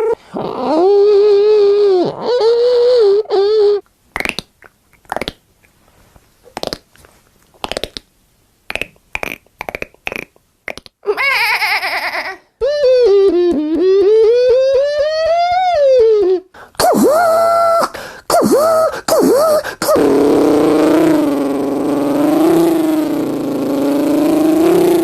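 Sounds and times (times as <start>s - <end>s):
man's mouth clicks and pops: 3.8s - 5.8s, 6.4s - 8.1s, 8.7s - 11.0s
man singing sliding tone: 12.6s - 25.0s.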